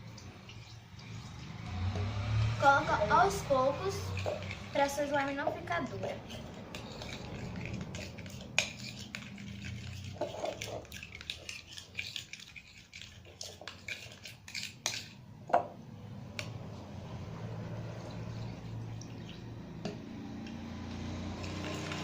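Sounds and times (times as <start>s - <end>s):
utensil stirring sticky slime: 0.0s - 15.2s.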